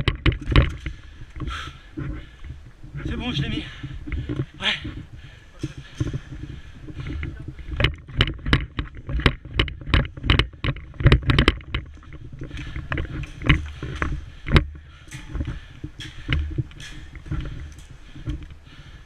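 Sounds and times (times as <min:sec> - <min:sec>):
sharp clicks and knocks: 0:00.0 - 0:02.8, 0:03.4 - 0:18.6
low rumble of movement: 0:00.0 - 0:19.0.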